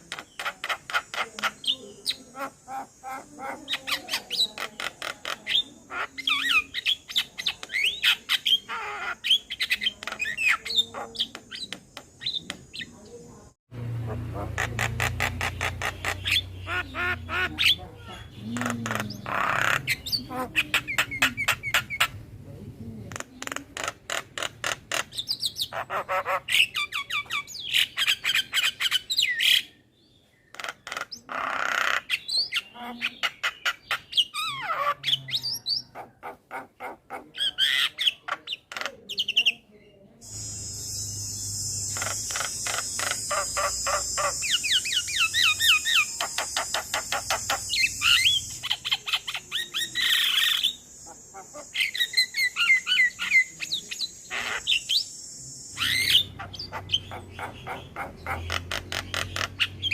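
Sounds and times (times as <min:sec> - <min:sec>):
myna calling: 0:00.0 - 0:29.8, 0:30.5 - 0:59.9
steady high hiss: 0:40.2 - 0:56.4.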